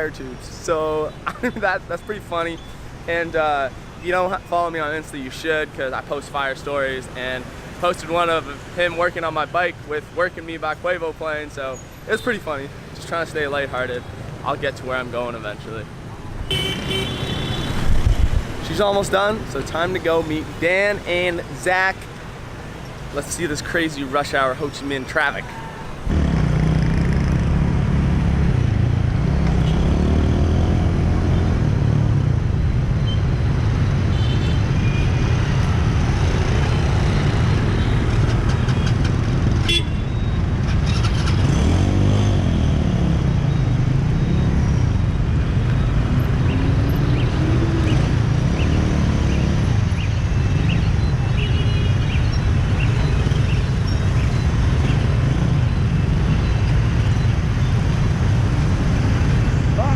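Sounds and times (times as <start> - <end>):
short horn toots: 16.5 - 17.8.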